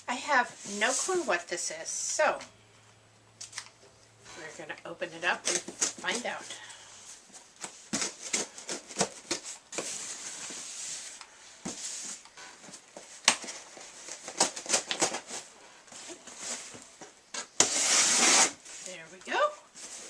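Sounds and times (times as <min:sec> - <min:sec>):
packing tape ripping: 0:13.2 - 0:15.4, 0:17.4 - 0:18.6.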